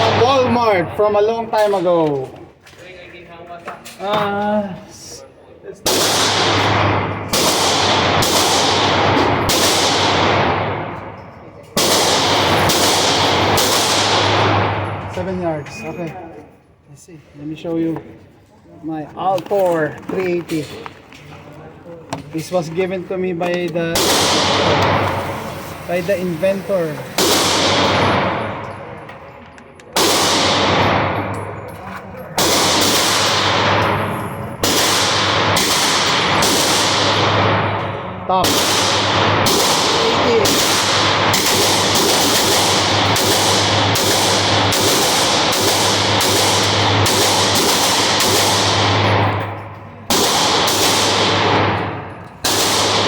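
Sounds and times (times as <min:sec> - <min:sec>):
gunshots with echoing tail: 0:00.0 - 0:01.9, 0:05.8 - 0:15.5, 0:23.9 - 0:29.3, 0:29.9 - 0:31.7, 0:32.3 - 0:53.0.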